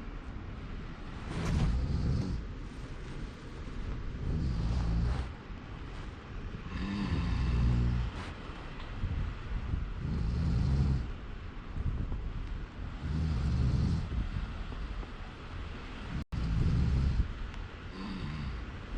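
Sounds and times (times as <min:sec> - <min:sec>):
person snoring heavily: 0:01.2 - 0:02.5, 0:04.1 - 0:05.4, 0:06.5 - 0:08.4, 0:10.0 - 0:11.1, 0:13.0 - 0:14.5, 0:16.1 - 0:18.8.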